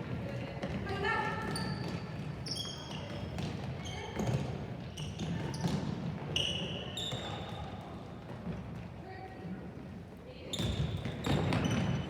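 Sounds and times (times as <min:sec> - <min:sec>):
murmur of voices in hall: 0:00.0 - 0:12.0
shoe squeaks on floor: 0:01.3 - 0:07.8, 0:10.4 - 0:12.0.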